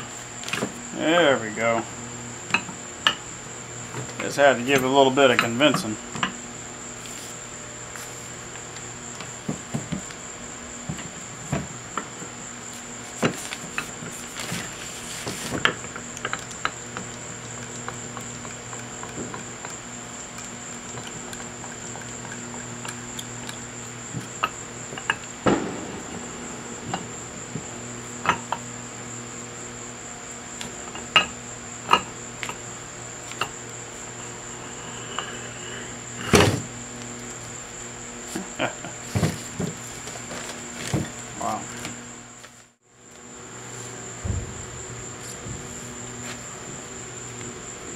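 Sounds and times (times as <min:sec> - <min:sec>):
low electrical hum: 0:00.0 - 0:47.9
high-pitched whine: 0:25.0 - 0:31.2.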